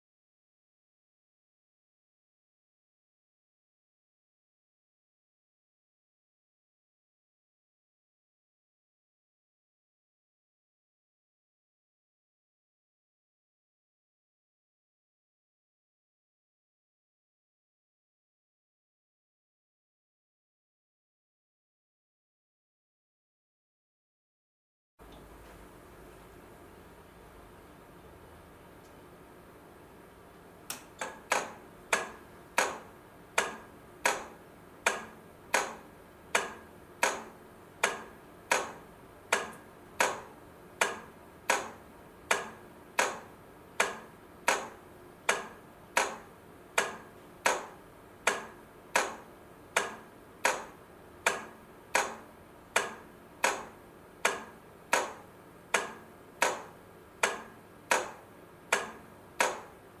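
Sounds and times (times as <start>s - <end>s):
crossing light flasher clicking: 30.6s - 59.8s.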